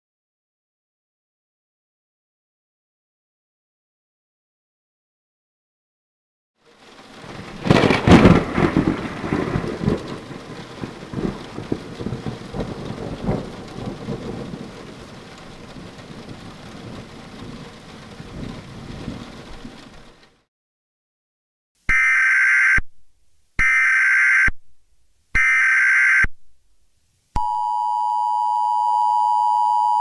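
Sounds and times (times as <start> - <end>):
steady rain: 6.6 - 20.5
thunder rumbling: 6.7 - 20.3.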